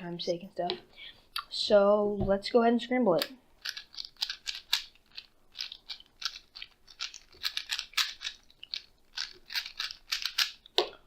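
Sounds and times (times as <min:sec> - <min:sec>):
puzzle cube plastic clicks: 0:03.2 - 0:11.0.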